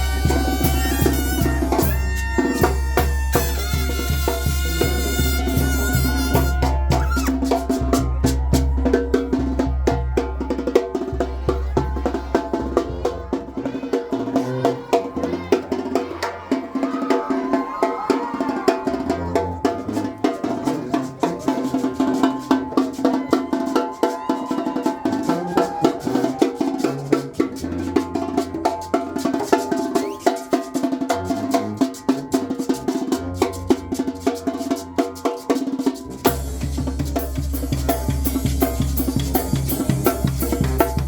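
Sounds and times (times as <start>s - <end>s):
brass and woodwind lines: 0.0s - 8.0s.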